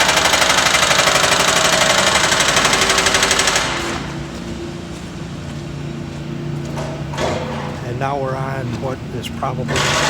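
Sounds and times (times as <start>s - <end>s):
power hammer hammering: 0.0s - 4.2s, 9.7s - 10.0s
low steady hum: 4.0s - 10.0s.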